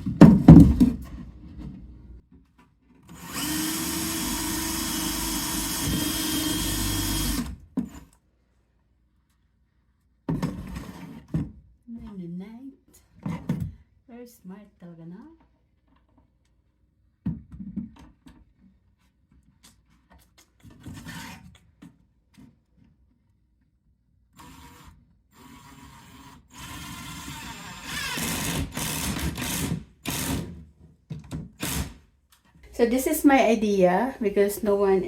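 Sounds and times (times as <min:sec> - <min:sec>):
wooden cabinet knocks and clicks: 0:00.0 - 0:01.2
power drill driving screws: 0:03.1 - 0:08.0, 0:24.4 - 0:30.6, 0:31.6 - 0:32.0.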